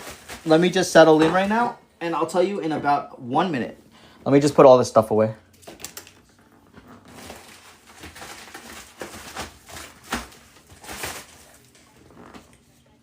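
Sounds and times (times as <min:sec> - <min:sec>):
cards and packaging rustling: 0:00.0 - 0:01.6, 0:05.5 - 0:12.6.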